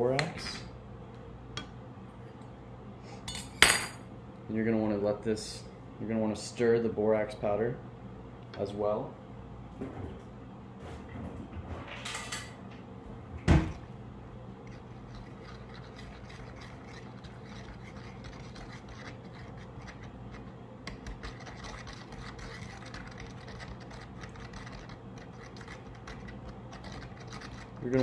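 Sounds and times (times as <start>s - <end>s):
spoon scraping a bowl: 14.6s - 28.0s.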